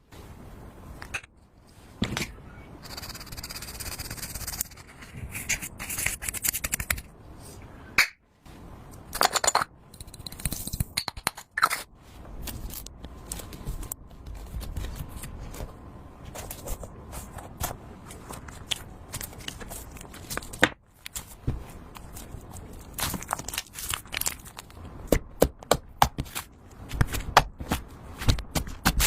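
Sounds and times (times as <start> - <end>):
slime scraping and crackling: 18.1 - 24.8.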